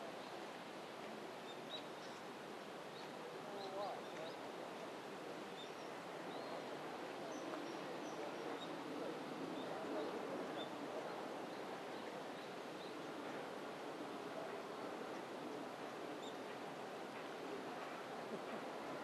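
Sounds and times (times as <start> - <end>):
outdoor background noise: 0.0 - 19.0.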